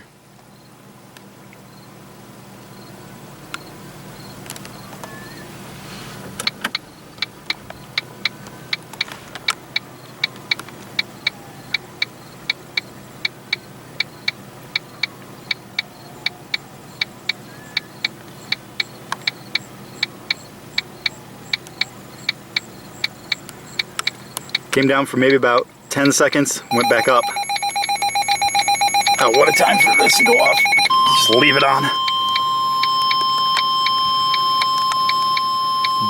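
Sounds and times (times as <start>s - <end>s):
car low hum: 0.0s - 36.0s
hazard light flasher ticking: 32.0s - 36.0s.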